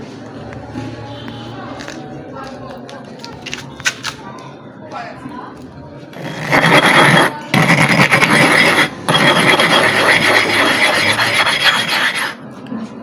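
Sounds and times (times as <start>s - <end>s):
sharpening stone grinding rasp: 6.2s - 12.4s.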